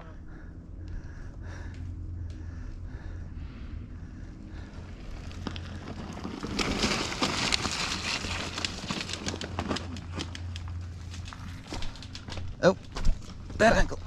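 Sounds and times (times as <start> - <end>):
bike tyres crunching on gravel: 4.6 - 14.0.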